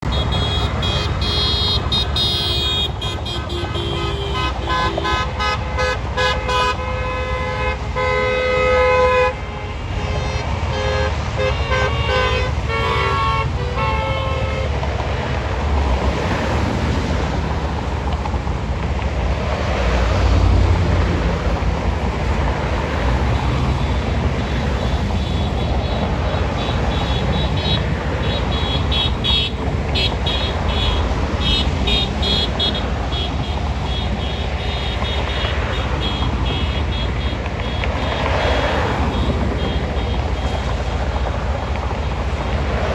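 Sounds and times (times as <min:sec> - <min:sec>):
car horns honking: 0:00.0 - 0:15.1, 0:22.4 - 0:40.8
passing traffic: 0:00.0 - 0:42.9
car passing by: 0:14.8 - 0:40.9.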